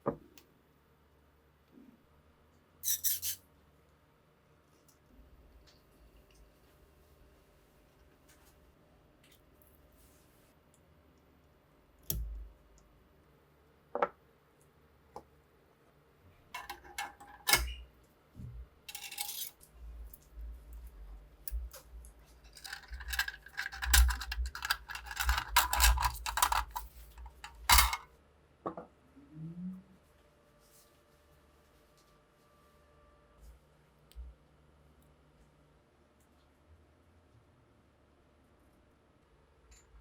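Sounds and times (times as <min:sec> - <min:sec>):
metal rifle parts clinking: 0:16.6 - 0:17.7, 0:18.9 - 0:19.6, 0:22.5 - 0:28.0.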